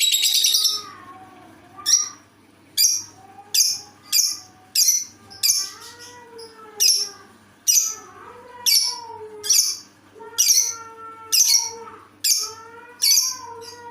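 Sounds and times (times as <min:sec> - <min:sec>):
bird shrill chirps: 0:00.0 - 0:00.9.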